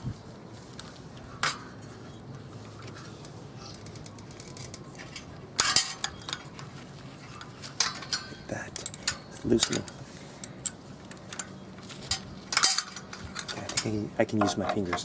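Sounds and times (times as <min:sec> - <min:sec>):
wrench clicking on brake nut: 0:08.7 - 0:10.8.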